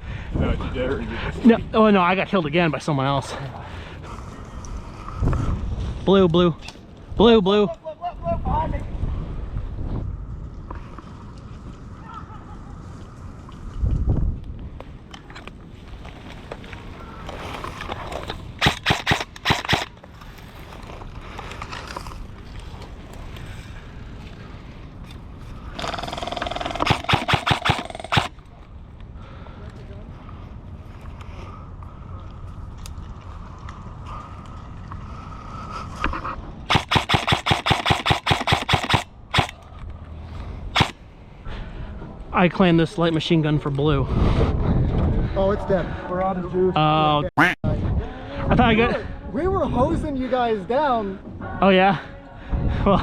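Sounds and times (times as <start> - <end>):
airsoft gun shots: 18.6 - 19.9, 25.8 - 28.3, 36.7 - 39.6, 40.8 - 41.0.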